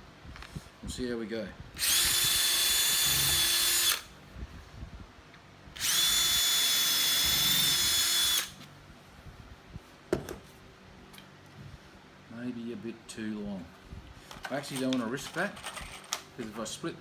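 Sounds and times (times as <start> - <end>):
power drill whining: 1.8 - 4.1, 5.8 - 8.6.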